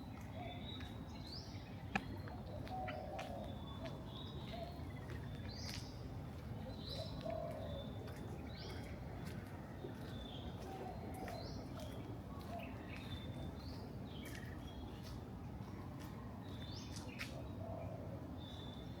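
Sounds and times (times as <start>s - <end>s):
birds chirping: 0.1s - 19.0s.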